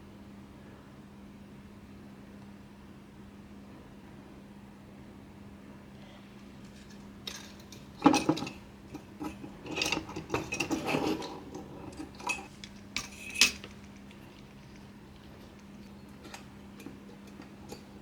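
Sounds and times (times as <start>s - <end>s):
metal parts clinking and clattering: 6.6s - 18.0s.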